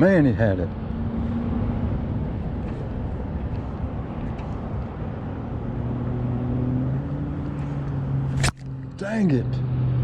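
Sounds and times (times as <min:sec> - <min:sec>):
road traffic rumble: 0:00.0 - 0:10.0.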